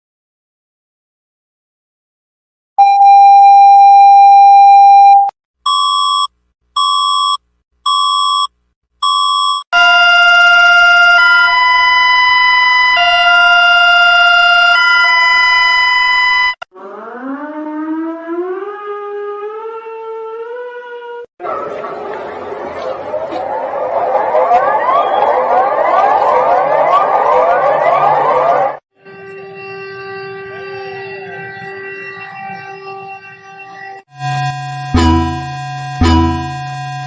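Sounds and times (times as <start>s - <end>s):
short beeps: 2.8s - 9.6s, 34.8s - 37.0s
rising siren-like tone: 11.0s - 37.0s
two-tone alternating chord: 29.0s - 37.0s
steady alert beep: 34.2s - 37.0s.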